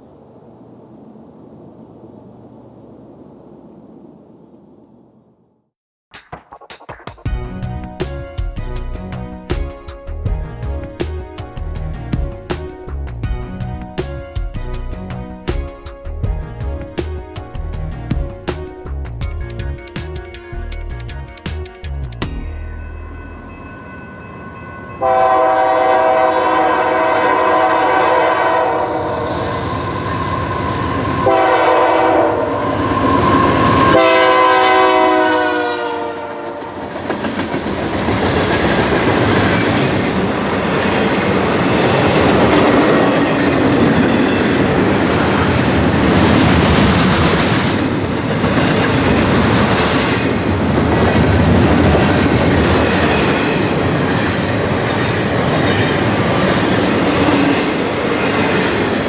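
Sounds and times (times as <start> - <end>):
locomotive air horn blasts: 25.0 - 36.8
train wheels clickety-clack: 35.8 - 59.0.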